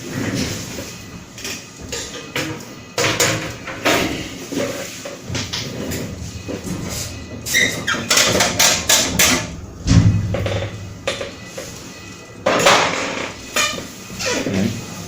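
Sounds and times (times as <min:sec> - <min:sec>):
heavy thump: 0:09.5 - 0:11.5.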